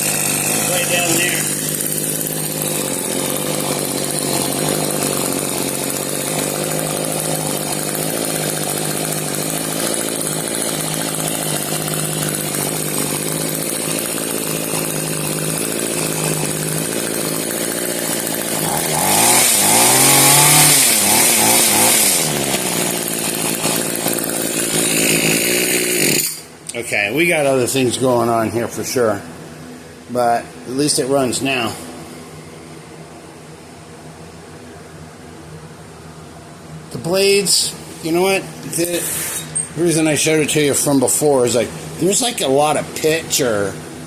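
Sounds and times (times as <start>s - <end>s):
hedge trimmer engine idling and revving: 0.0s - 27.8s, 37.0s - 44.0s.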